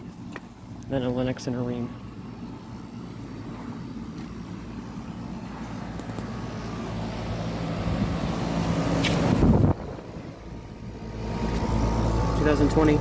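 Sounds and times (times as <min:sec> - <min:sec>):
air conditioner units humming: 0:00.0 - 0:13.0.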